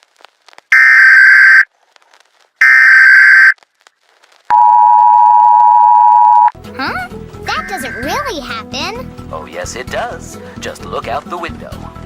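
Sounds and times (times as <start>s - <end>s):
high electronic beeps: 0.8s - 1.6s, 2.6s - 3.6s.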